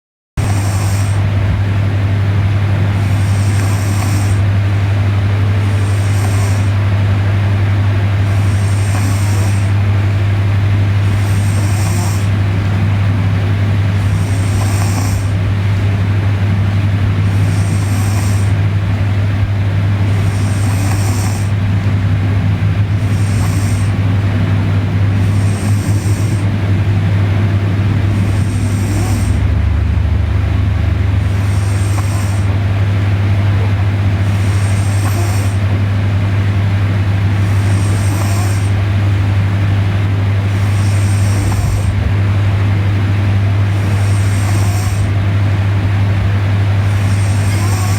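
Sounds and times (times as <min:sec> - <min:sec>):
person snoring: 0:00.4 - 0:01.4, 0:02.8 - 0:07.0, 0:08.1 - 0:09.8, 0:10.9 - 0:15.6, 0:17.2 - 0:18.6, 0:20.1 - 0:22.0, 0:22.6 - 0:30.1, 0:31.2 - 0:32.5, 0:33.6 - 0:35.9, 0:37.4 - 0:38.9, 0:40.4 - 0:42.5, 0:43.7 - 0:45.2, 0:46.8 - 0:47.9
low steady hum: 0:00.4 - 0:47.9.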